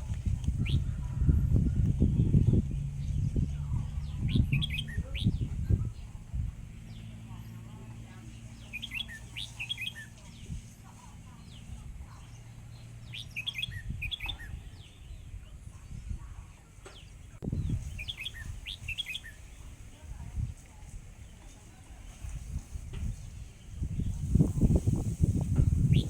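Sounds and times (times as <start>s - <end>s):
low rumble: 0.0s - 18.7s
songbird chirping: 0.0s - 26.0s.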